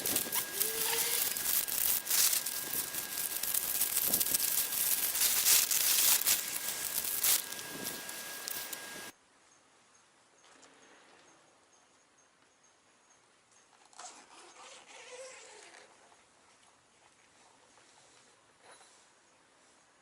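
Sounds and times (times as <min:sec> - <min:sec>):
fabric cover rustling: 0:00.0 - 0:09.1.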